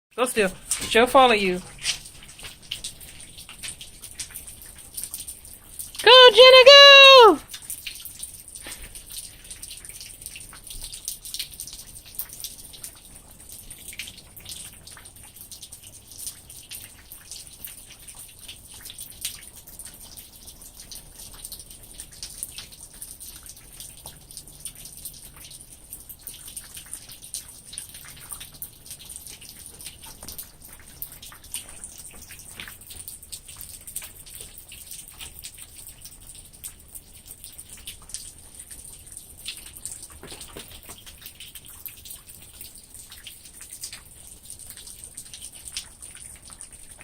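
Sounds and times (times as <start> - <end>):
rain falling: 0.2 - 47.0.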